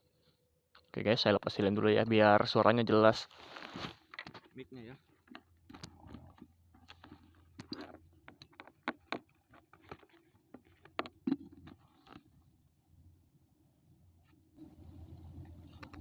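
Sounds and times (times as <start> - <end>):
microphone handling clicks and rustles: 3.3 - 12.3
faint steady low hum: 11.8 - 16.0.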